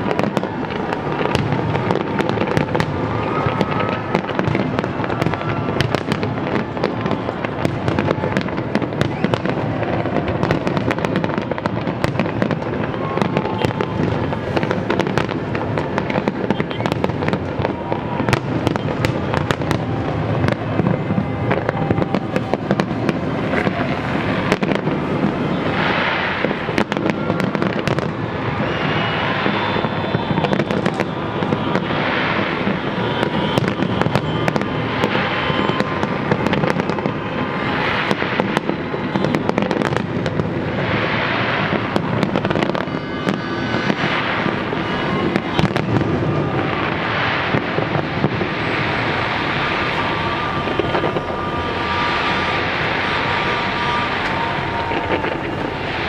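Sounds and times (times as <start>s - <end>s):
fireworks bangs: 0.0s - 56.0s
hissing crackle: 45.8s - 56.0s.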